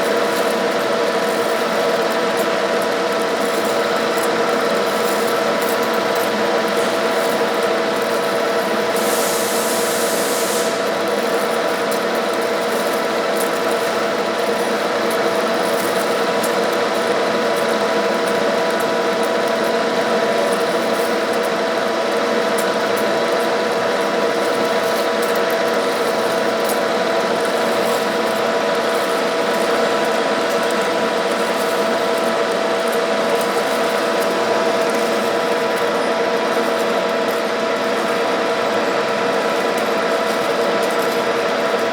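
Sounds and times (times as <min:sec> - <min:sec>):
short hiss: 0:09.0 - 0:10.9.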